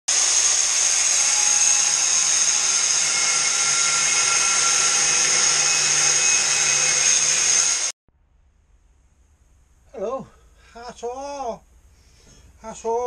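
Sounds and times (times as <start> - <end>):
power tool high-pitched whine: 0.1 - 7.9.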